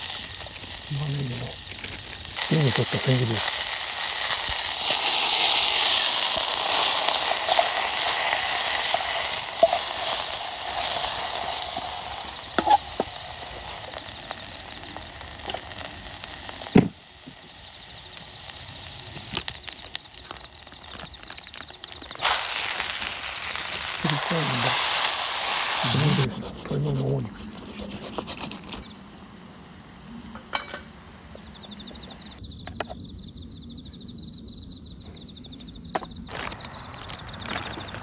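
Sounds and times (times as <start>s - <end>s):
food sizzling in a pan: 0.0s - 27.6s
fire crackling: 0.0s - 29.4s, 36.2s - 38.0s.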